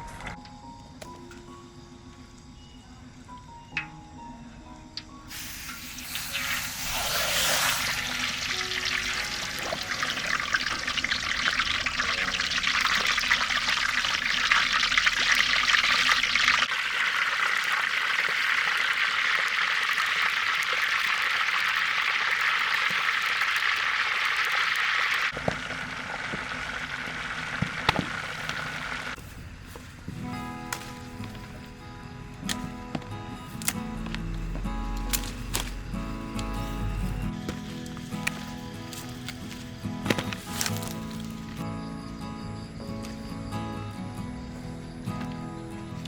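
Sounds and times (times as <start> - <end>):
meat sizzling in hot oil: 5.3 - 29.2.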